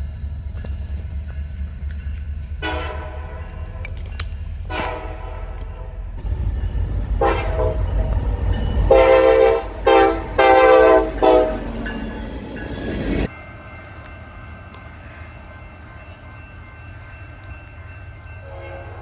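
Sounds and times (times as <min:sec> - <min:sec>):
low rumble of passing train: 0:00.0 - 0:19.0
locomotive air horn blasts: 0:02.6 - 0:03.6, 0:04.7 - 0:06.4, 0:07.0 - 0:12.1.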